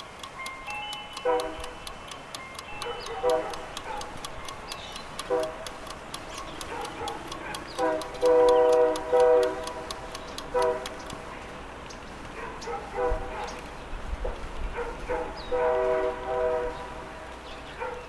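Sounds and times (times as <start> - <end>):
rapid steady ticking: 0.0 - 12.0
horn-like chord blasts: 7.8 - 9.8.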